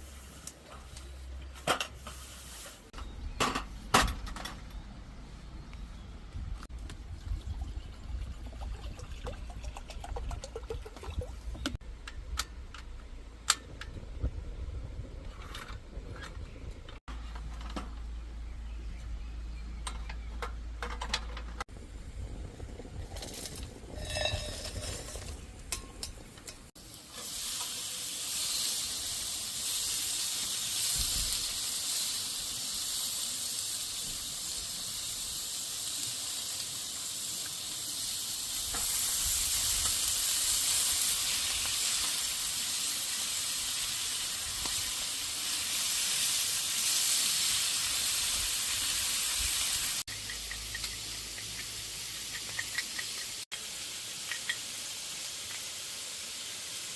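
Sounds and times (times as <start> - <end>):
steady high hiss: 0.0 - 3.0, 26.5 - 56.9.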